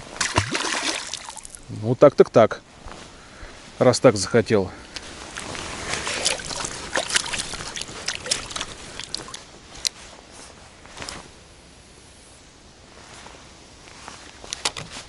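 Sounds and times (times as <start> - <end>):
water splashing and dripping: 0.0 - 1.7, 5.3 - 9.4
quiet hiss: 0.0 - 15.0.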